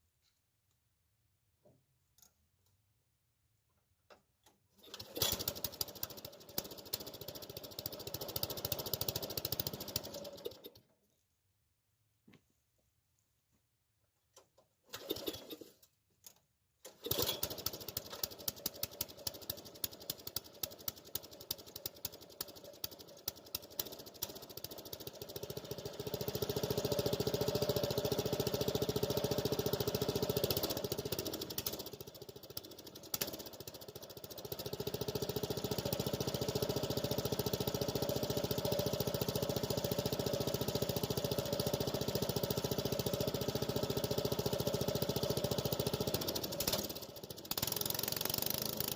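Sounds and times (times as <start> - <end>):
small gasoline engine running: 4.8 - 10.8, 16.9 - 48.9.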